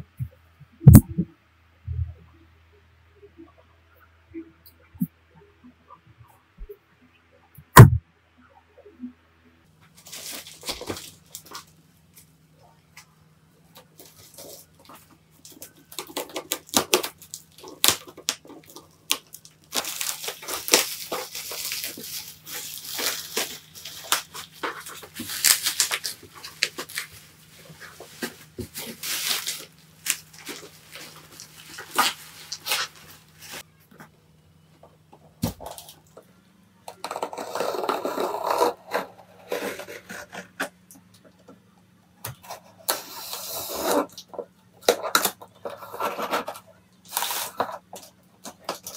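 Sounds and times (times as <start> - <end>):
faint low hum: 0.0 - 48.9
packaging rustling and tearing: 10.0 - 11.7, 13.9 - 33.6, 42.5 - 48.9.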